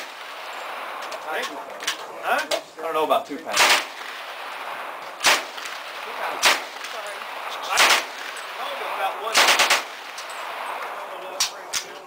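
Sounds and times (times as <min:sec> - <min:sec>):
shooting range background noise: 0:00.0 - 0:12.0
gunshots: 0:03.5 - 0:11.9.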